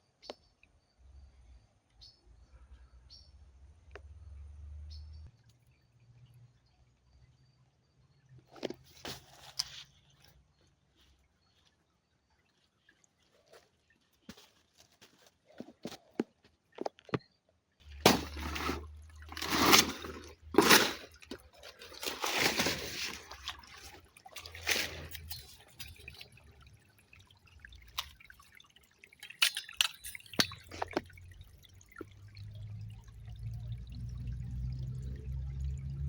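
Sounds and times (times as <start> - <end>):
river water splashing: 17.8 - 32.7
water dripping: 17.8 - 36.0.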